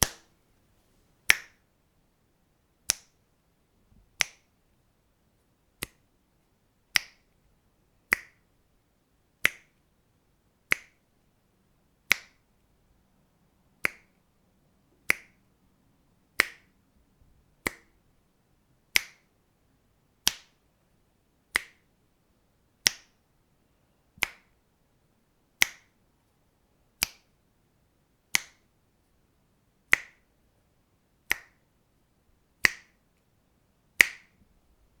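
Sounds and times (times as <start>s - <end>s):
finger snaps: 0.0s - 0.3s, 1.3s - 1.6s, 2.9s - 3.2s, 4.2s - 4.5s, 5.8s - 6.0s, 6.9s - 7.3s, 8.1s - 8.4s, 9.4s - 9.8s, 10.7s - 11.0s, 12.1s - 12.5s, 13.8s - 14.2s, 15.0s - 15.4s, 16.4s - 16.8s, 17.6s - 18.0s, 18.9s - 19.3s, 20.2s - 20.6s, 21.5s - 21.9s, 22.8s - 23.2s, 24.2s - 24.6s, 25.6s - 26.0s, 27.0s - 27.4s, 28.3s - 28.7s, 29.9s - 30.3s, 31.3s - 31.6s, 32.6s - 33.0s, 34.0s - 34.4s.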